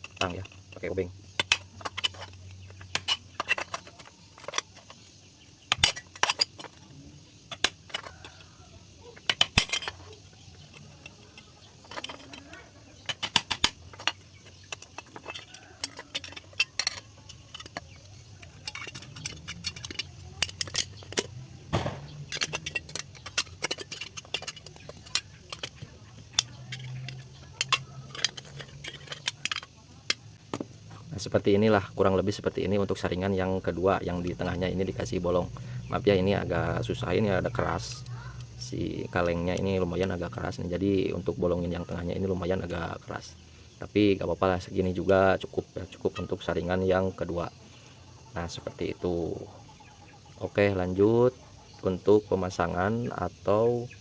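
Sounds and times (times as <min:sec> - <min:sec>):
metallic clicks clinks and scrapes: 0:00.0 - 0:31.1.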